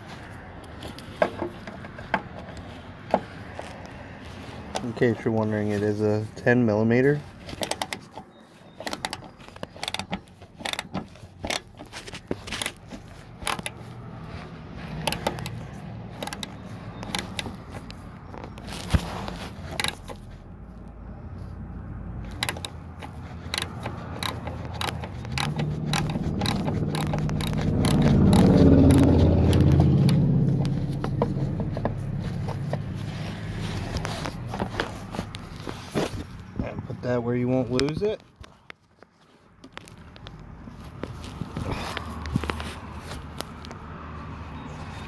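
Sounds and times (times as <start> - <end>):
socket ratchet clicking: 7.5 - 8.2, 8.8 - 14.0, 14.9 - 18.0, 19.6 - 20.3, 22.2 - 32.9.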